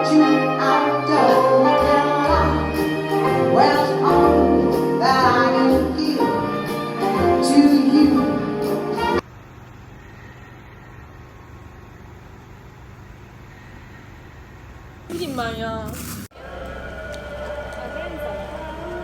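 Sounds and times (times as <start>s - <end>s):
music with singing: 0.0s - 9.2s, 16.4s - 19.0s.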